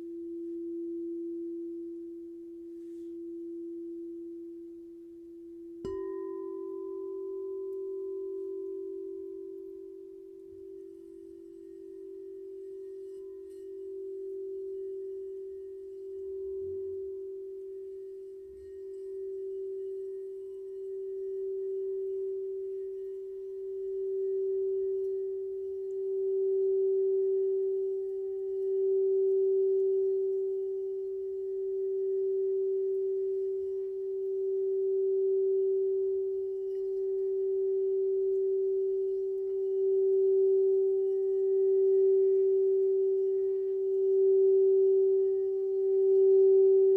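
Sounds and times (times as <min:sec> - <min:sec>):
singing bowl tone: 0:00.0 - 0:46.9.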